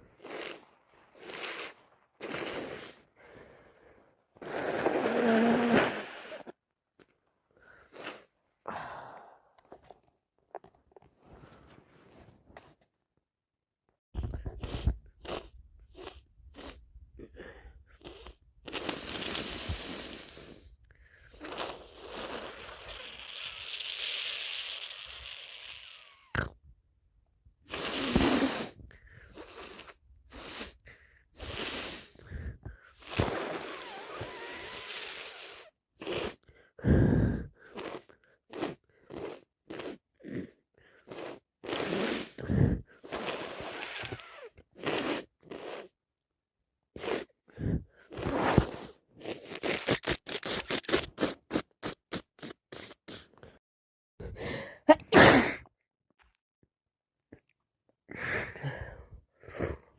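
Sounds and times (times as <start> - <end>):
person sniffing congested nose: 0.0 - 3.8, 4.4 - 6.6, 7.6 - 9.5, 14.2 - 26.5, 27.7 - 46.0, 47.0 - 53.6, 54.5 - 55.7, 58.1 - 59.9
heavy breathing: 7.5 - 9.8, 28.7 - 33.0, 36.3 - 38.3, 58.1 - 59.9.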